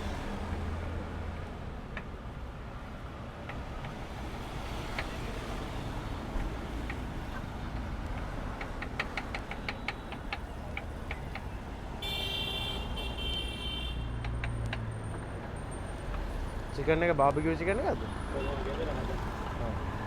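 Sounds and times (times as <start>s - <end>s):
street traffic noise: 0.0s - 20.0s
sharp knocks: 7.7s - 11.6s
car horn: 12.0s - 14.2s.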